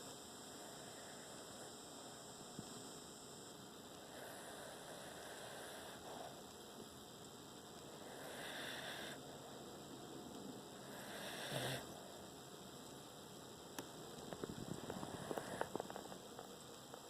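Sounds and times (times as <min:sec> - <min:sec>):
pet snoring softly: 0:00.5 - 0:02.2, 0:04.0 - 0:06.5, 0:07.9 - 0:09.4, 0:10.7 - 0:12.2, 0:14.4 - 0:16.5.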